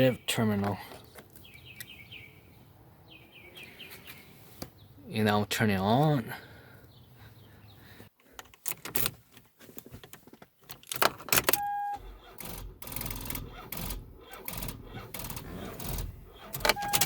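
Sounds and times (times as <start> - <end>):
handling clicks and rattles: 8.4 - 11.6
starter cranking engine: 12.0 - 17.0.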